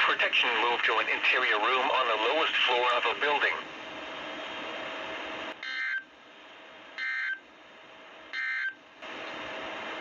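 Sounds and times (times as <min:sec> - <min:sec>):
radio hiss: 0:00.0 - 0:05.5.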